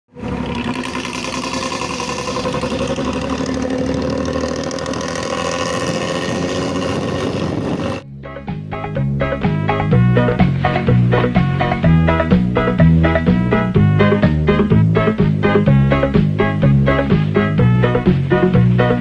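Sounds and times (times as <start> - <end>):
bus engine rumbling: 0.1 - 8.2
music with a beat: 8.3 - 19.0.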